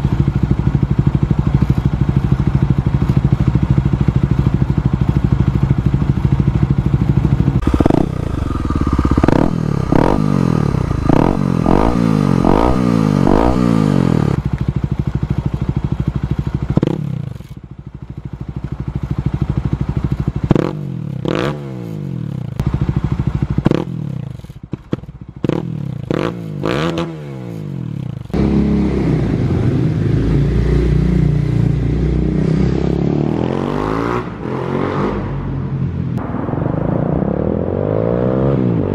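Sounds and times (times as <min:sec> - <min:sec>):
dirt bike engine revving: 0:07.6 - 0:14.4.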